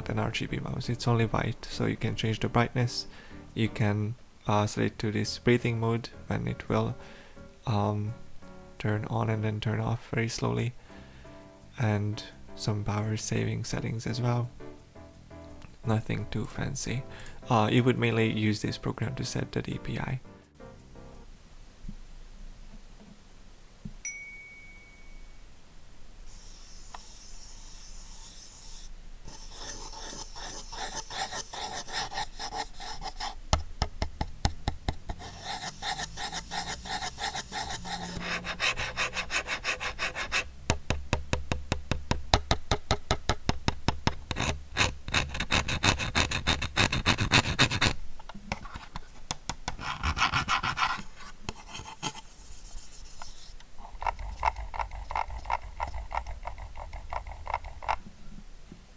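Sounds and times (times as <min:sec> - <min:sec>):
mouse scraping with ticks: 0:26.3 - 0:33.4, 0:35.1 - 0:40.5, 0:44.3 - 0:48.0, 0:49.7 - 0:58.0.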